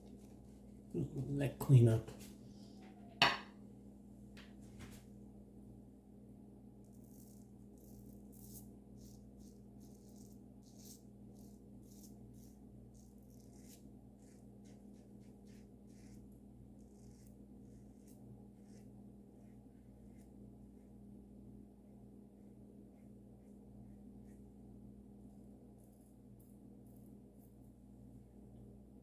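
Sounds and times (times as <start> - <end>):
razor scraping stubble: 6.9 - 20.3.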